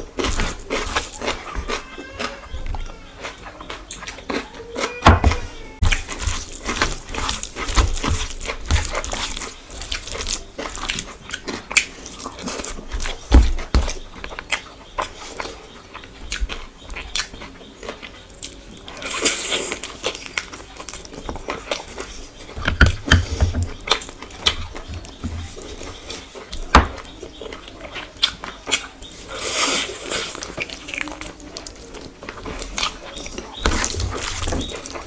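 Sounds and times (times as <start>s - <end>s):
chewing with wet mouth smacks: 5.9s - 35.0s
heavy thumps: 22.5s - 24.0s, 26.6s - 27.0s.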